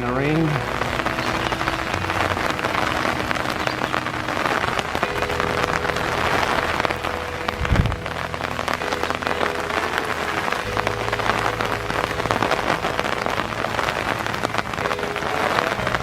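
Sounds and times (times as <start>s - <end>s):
light rain falling: 0.0s - 16.0s.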